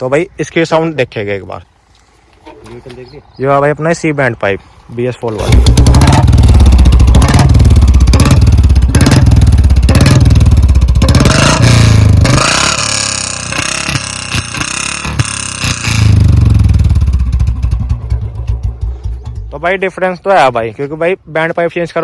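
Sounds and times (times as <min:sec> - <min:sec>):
exhaust pops and crackles: 0:05.2 - 0:20.2
motorcycle engine revving: 0:05.3 - 0:19.8.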